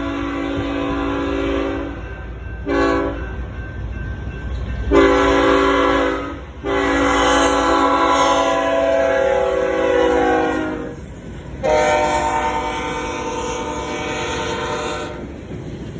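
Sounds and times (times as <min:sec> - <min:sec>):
locomotive air horn blasts: 0:00.0 - 0:02.0, 0:02.6 - 0:03.2, 0:04.9 - 0:11.0, 0:11.6 - 0:15.3
freight train rumble: 0:00.0 - 0:15.9.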